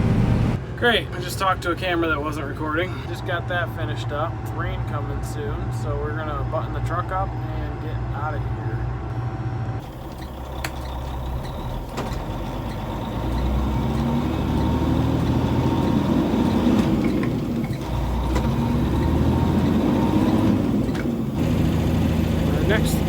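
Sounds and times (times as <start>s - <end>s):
truck engine pulling away: 0.0s - 0.7s, 8.9s - 23.0s.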